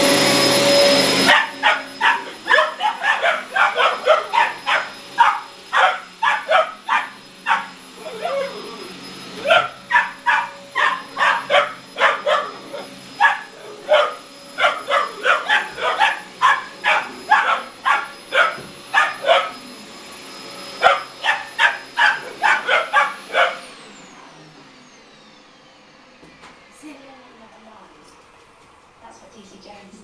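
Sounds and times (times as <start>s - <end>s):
vacuum cleaner whine: 0.0s - 30.0s
puppies barking: 0.2s - 23.9s.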